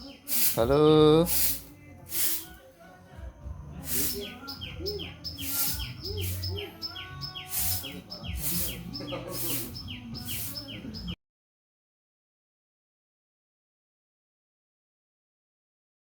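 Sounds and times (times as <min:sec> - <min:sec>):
bird chirping: 0:03.8 - 0:11.2.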